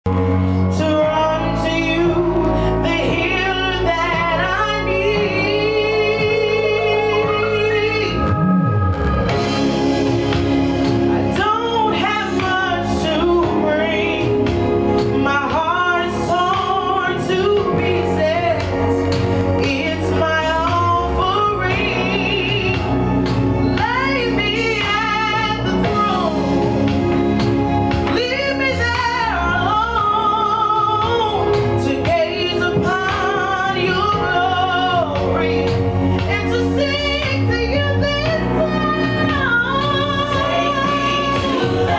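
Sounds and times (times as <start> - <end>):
person singing with vibrato: 0.1 - 9.1, 28.1 - 41.9
instrumental accompaniment: 0.1 - 41.9
sustained backing chords: 0.1 - 41.9.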